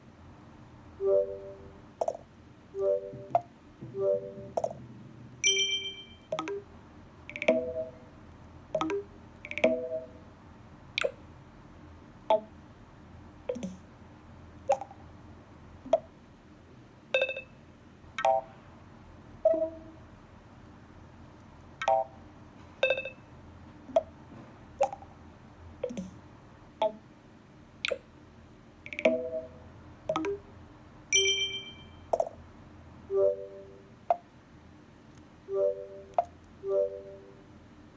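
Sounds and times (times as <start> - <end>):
computer alert chimes and blips: 1.0 - 1.8, 2.8 - 4.8, 5.4 - 6.6, 7.3 - 8.1, 28.9 - 29.6, 31.2 - 32.1, 33.1 - 33.9, 35.5 - 37.4.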